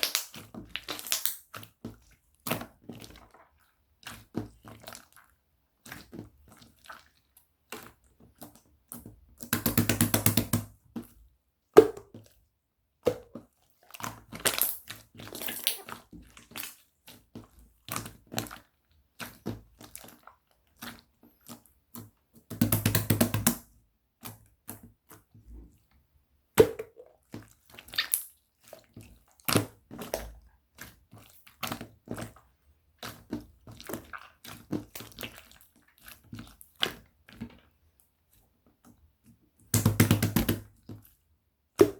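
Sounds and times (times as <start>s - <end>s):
rapid crackling of slime: 0.0s - 1.7s
slime squishing with sticky pops: 0.0s - 11.2s, 13.0s - 25.3s, 26.6s - 37.7s.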